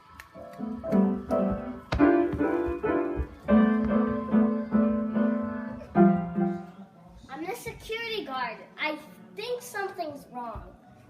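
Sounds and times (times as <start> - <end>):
piano music: 0.0 - 6.9.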